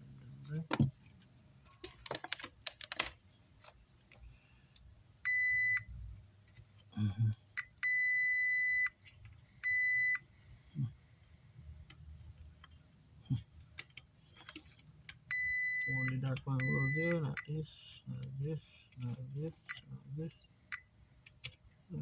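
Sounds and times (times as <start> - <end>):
multimeter beeps: 5.2 - 5.9, 7.6 - 9.0, 9.6 - 10.3, 15.3 - 18.0, 19.5 - 20.9.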